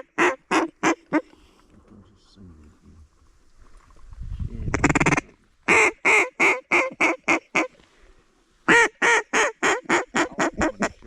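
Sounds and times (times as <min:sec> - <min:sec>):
duck call quacks: 0:00.0 - 0:01.2, 0:04.8 - 0:07.8, 0:08.7 - 0:11.0.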